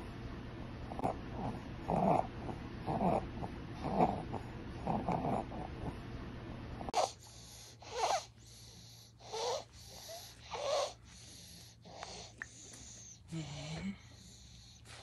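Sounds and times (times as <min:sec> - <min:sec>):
child's noisy obstructed breathing: 0:06.9 - 0:15.0.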